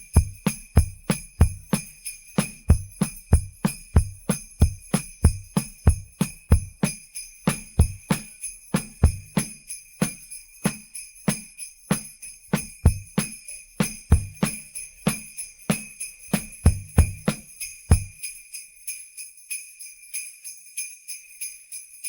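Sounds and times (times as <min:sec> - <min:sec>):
low drum beat: 0:00.0 - 0:01.8, 0:02.4 - 0:06.9, 0:07.5 - 0:09.5, 0:11.9 - 0:15.2, 0:16.4 - 0:18.1
sleigh bells jingling: 0:00.0 - 0:22.0.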